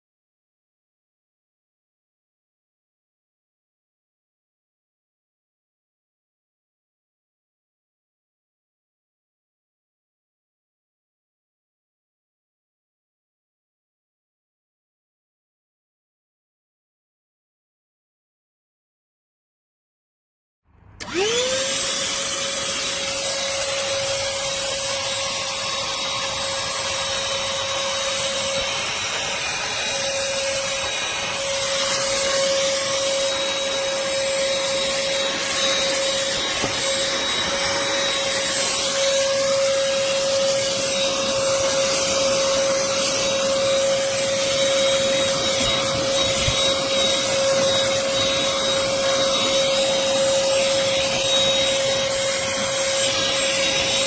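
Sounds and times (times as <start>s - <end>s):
handheld vacuum motor whine: 20.8s - 54.0s.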